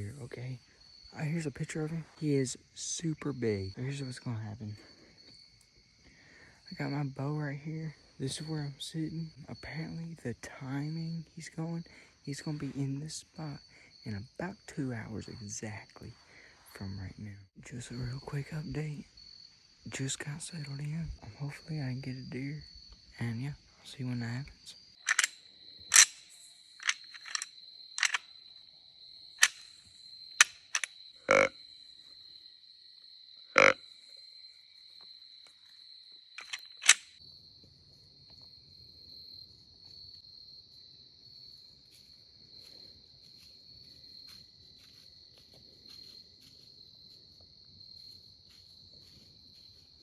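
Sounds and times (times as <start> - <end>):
crickets chirping: 0.0 - 50.0
handling clicks and knocks: 25.1 - 28.2, 29.4 - 29.7, 30.4 - 31.5, 36.4 - 37.1.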